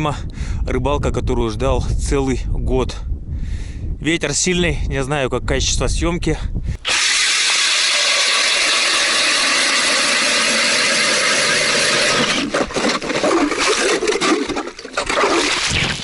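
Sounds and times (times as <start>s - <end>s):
ice auger grinding through ice: 6.8s - 16.0s
scraping and knocking: 12.1s - 15.6s.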